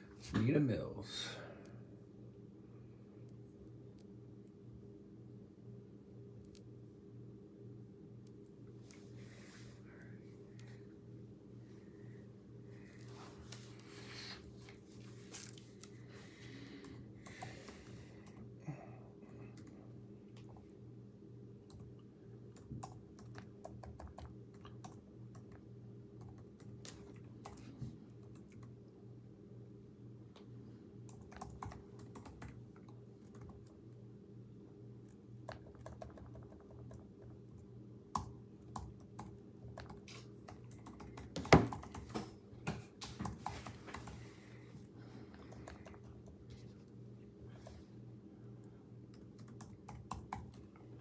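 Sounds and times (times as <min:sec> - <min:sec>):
typing on computer keyboard: 0:22.5 - 0:25.6, 0:31.1 - 0:33.7, 0:35.4 - 0:37.4, 0:38.1 - 0:42.2, 0:49.2 - 0:50.6.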